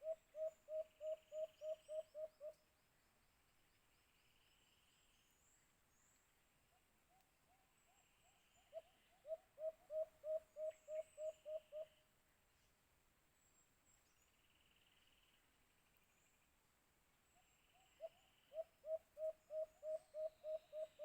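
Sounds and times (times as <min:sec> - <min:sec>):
dove hooting: 0:00.0 - 0:02.6, 0:08.7 - 0:12.0, 0:18.0 - 0:21.0.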